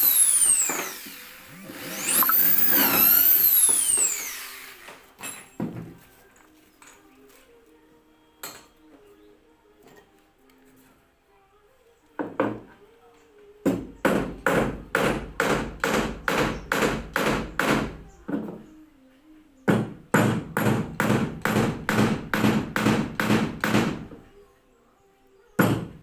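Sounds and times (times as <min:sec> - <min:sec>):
hammer striking wood: 0:19.7 - 0:24.0.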